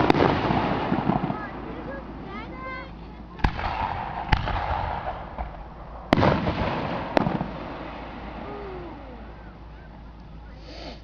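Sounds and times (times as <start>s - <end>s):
fireworks exploding: 0.0s - 10.7s.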